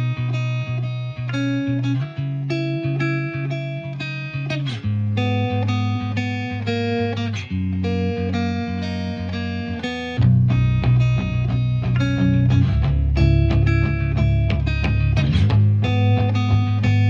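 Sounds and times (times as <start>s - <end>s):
guitar music with bass line: 0.0s - 17.0s.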